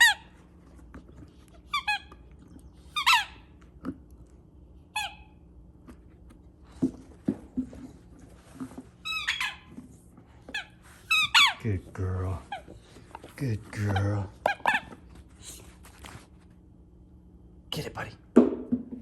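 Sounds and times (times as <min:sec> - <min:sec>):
squeaky dog toy squeaking: 0:09.0 - 0:09.7, 0:10.5 - 0:11.6.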